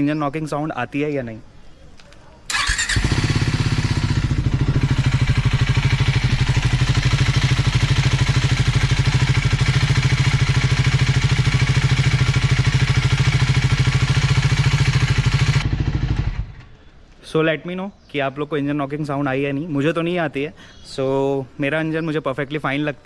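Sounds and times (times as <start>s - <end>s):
motorcycle engine idling: 2.5s - 16.7s.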